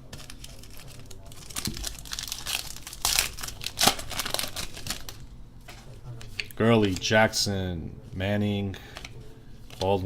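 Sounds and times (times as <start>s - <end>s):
foil wrapper crinkling and tearing: 0.0s - 5.2s.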